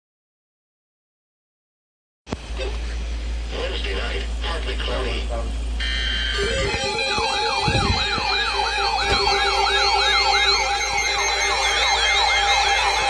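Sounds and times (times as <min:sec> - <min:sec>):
electronic yelp siren: 0:05.8 - 0:13.0.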